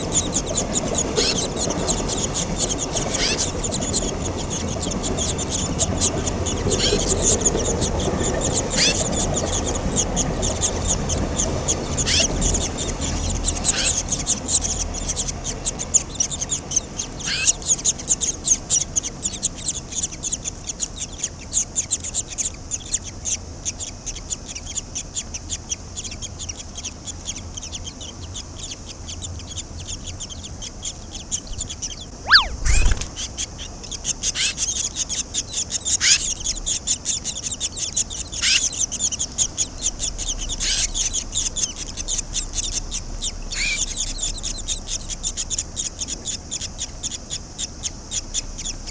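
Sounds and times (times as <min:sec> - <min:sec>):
nestlings chattering: 0:00.0 - 0:48.9
downward-sliding bird calls: 0:31.4 - 0:33.8.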